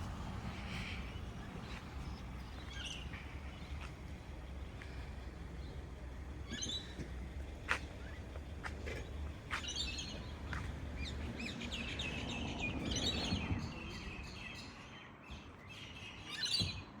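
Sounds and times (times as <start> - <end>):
low background rumble: 0.0 - 11.7
birds chirping: 0.0 - 16.9.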